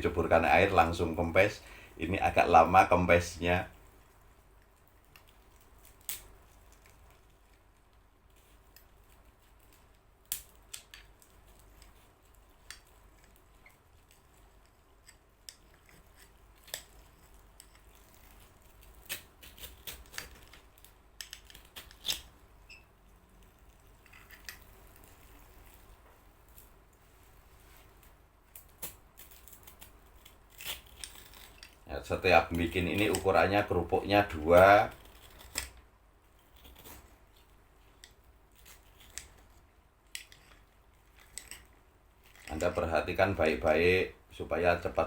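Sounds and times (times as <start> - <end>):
cracker clicks and snaps: 3.7 - 22.5, 28.0 - 42.9.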